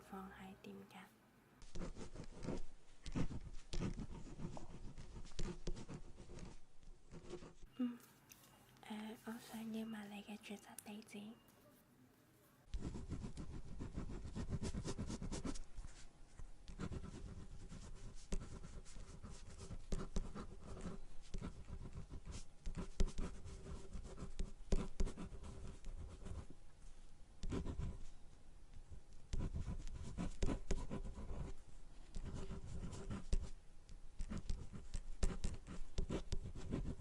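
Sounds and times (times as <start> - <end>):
pen scratching on paper: 1.6 - 7.6, 12.7 - 16.0, 16.7 - 26.5, 27.4 - 28.1, 29.3 - 33.6, 34.2 - 37.0.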